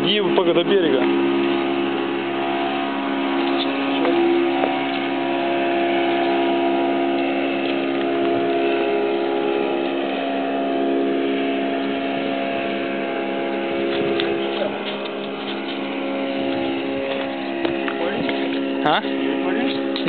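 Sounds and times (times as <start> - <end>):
engine droning: 0.0 - 20.0.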